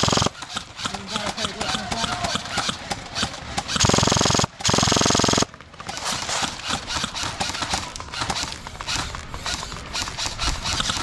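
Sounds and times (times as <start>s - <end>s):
airsoft rifle full-auto bursts: 0.0s - 11.0s
clicks and rustling: 5.6s - 11.0s.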